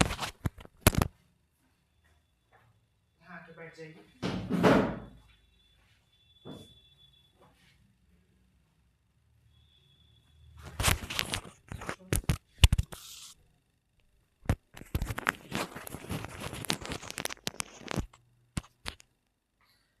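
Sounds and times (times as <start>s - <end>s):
rustling and crunching: 14.6s - 19.0s.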